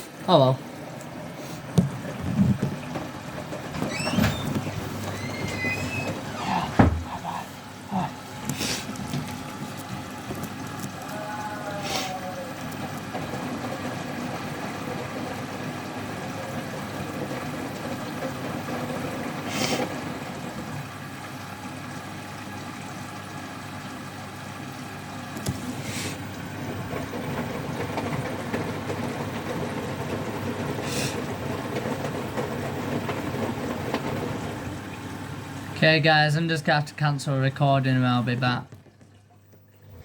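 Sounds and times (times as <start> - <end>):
washing machine drum tumbling: 0.7 - 11.2, 25.2 - 40.0
water sloshing: 1.0 - 11.2.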